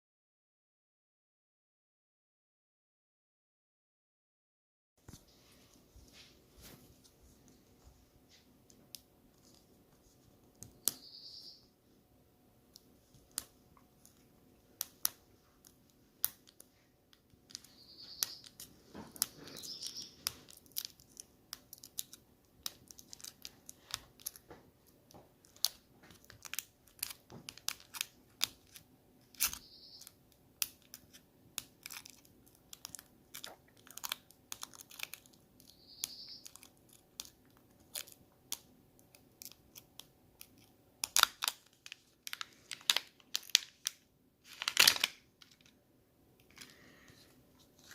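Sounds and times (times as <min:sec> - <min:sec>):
packaging crinkling: 0:17.4 - 0:45.8
packaging tearing: 0:25.5 - 0:35.7, 0:39.4 - 0:45.2.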